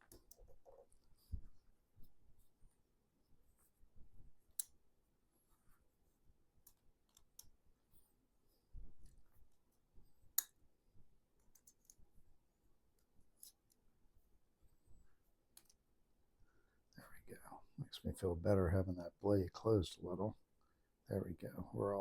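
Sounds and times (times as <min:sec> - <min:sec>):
metal knife parts clicking: 0:11.5 - 0:12.0, 0:13.4 - 0:13.8.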